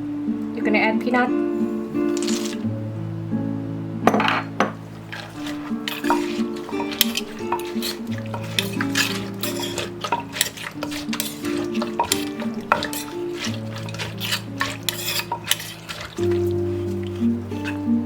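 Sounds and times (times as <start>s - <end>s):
background music: 0.0s - 18.0s
utensils scraping a mortar: 2.1s - 2.6s, 4.9s - 18.0s.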